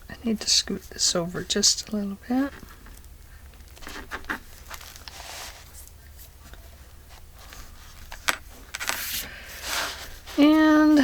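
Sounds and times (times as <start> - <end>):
paper journal scraping on table: 2.4 - 11.0.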